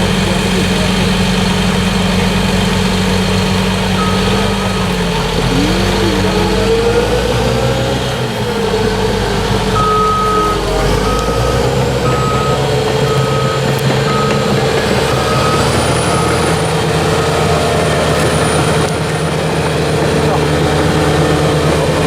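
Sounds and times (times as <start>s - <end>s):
diesel engine running: 0.0s - 22.0s
reverse alarm beeping: 3.9s - 18.9s.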